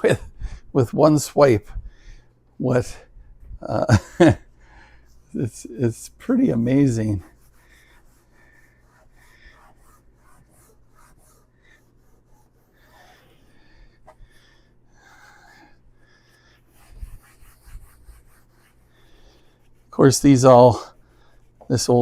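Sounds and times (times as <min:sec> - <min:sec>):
cloth rubbing on vinyl case: 0:05.2 - 0:13.4, 0:16.7 - 0:22.0.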